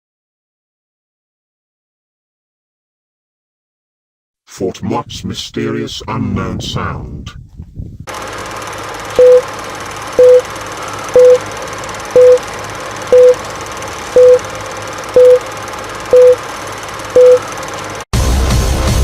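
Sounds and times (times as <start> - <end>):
short electronic beeps: 9.2 - 9.5, 10.2 - 11.4, 12.2 - 12.4, 13.1 - 13.4, 14.2 - 14.4, 15.2 - 15.4, 16.1 - 16.4, 17.2 - 17.6
loud music: 18.2 - 19.0.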